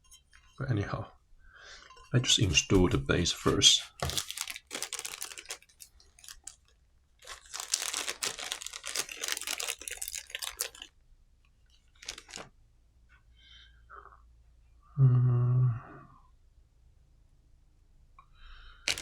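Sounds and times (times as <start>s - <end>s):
packaging crinkling and tearing: 3.5s - 11.0s, 11.9s - 12.5s.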